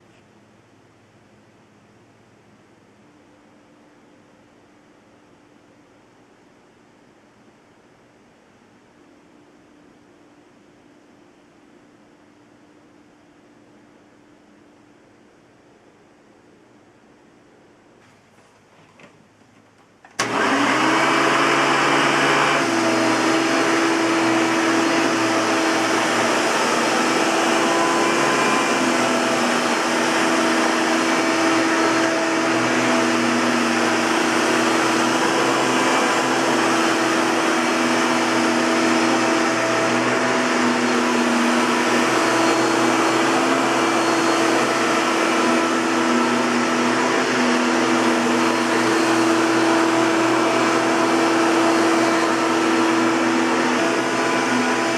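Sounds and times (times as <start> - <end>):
vacuum cleaner running: 20.1 - 54.9.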